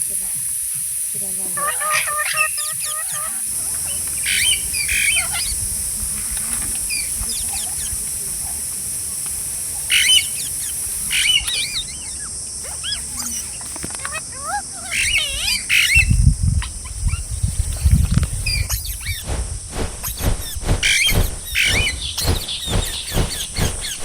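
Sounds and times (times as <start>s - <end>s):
steady high hiss: 0.0s - 24.0s
parrots squawking: 1.4s - 5.6s, 9.9s - 17.2s, 18.5s - 24.0s
low rumbling thumps: 18.0s - 24.0s
rapid clicks: 19.2s - 24.0s.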